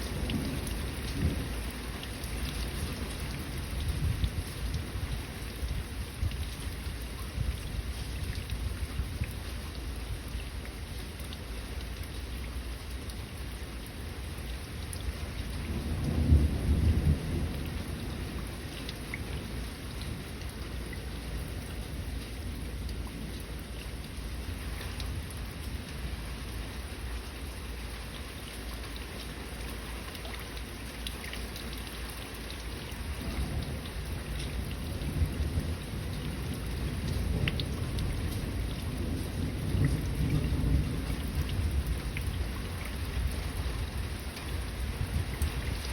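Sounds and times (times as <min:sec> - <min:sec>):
thunder rumbling: 0:00.0 - 0:01.8, 0:15.6 - 0:20.4, 0:33.2 - 0:45.8
rain drop ticks: 0:00.0 - 0:45.9
steady rain: 0:00.0 - 0:45.9.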